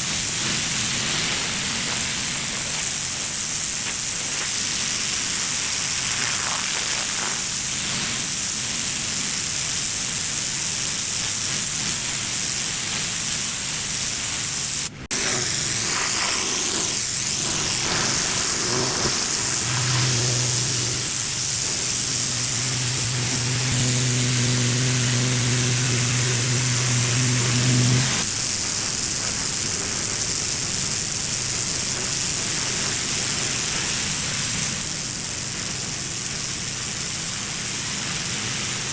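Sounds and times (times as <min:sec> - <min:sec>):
pressure washer spray hissing: 0:00.0 - 0:38.9
low hum: 0:18.0 - 0:28.2.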